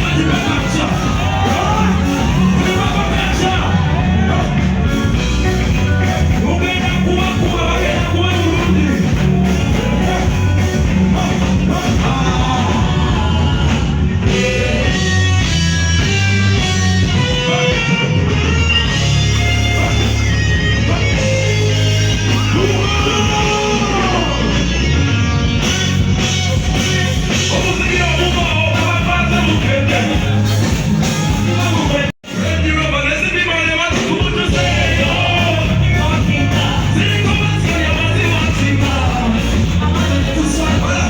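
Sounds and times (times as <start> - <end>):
person singing: 0.0 - 5.4, 6.0 - 15.6, 20.8 - 24.5, 31.3 - 41.0
live band amplified music: 0.0 - 41.0.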